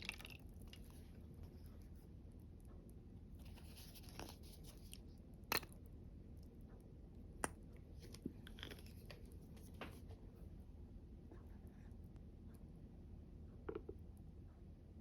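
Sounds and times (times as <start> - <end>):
soft rustling: 3.4 - 4.9.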